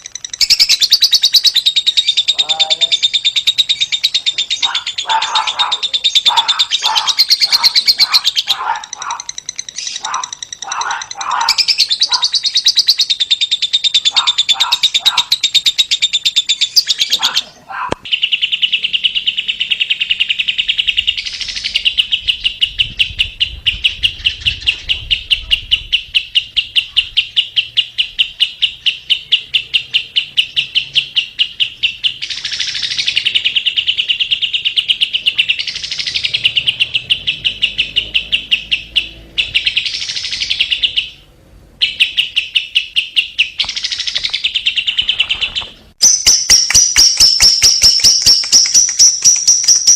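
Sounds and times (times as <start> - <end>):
lovebird chattering trill: 0.0 - 49.9.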